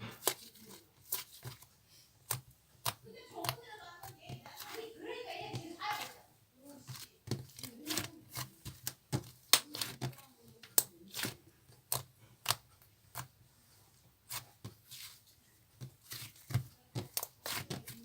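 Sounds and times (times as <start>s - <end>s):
slime clicking and popping: 2.2s - 4.8s, 7.0s - 13.3s.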